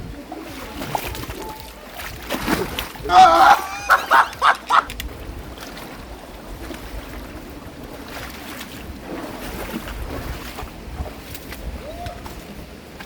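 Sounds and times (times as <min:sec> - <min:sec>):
stream rushing: 0:00.0 - 0:13.0.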